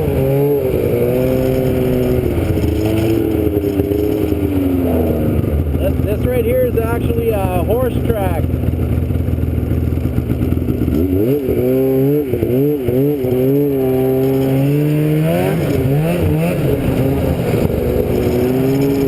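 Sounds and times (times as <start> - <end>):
vehicle engine revving: 0.0 - 19.0.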